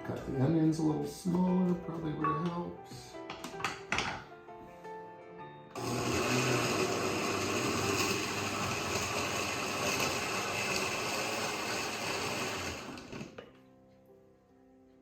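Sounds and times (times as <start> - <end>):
blender motor whining: 5.8 - 13.4.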